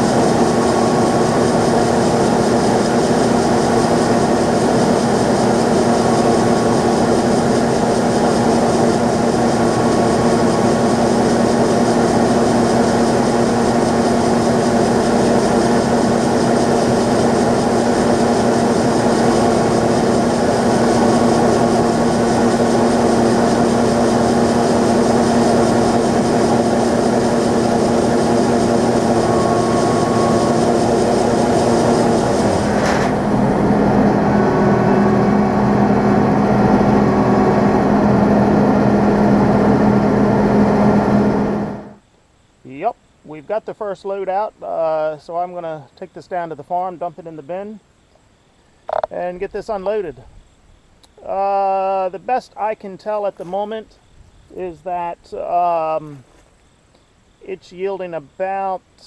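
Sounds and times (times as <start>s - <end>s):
combine harvester engine drone: 0.0s - 42.0s, 48.9s - 50.0s.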